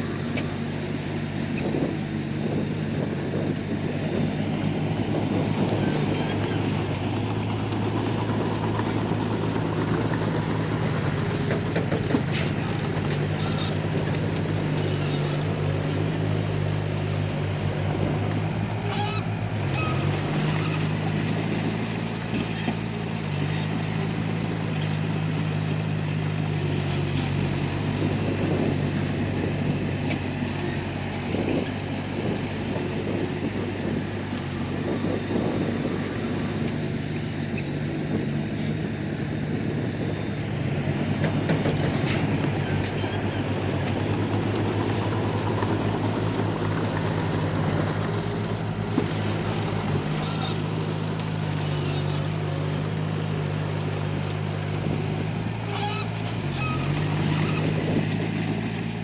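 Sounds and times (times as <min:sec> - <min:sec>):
bulldozer diesel engine running: 0:00.0 - 0:59.0.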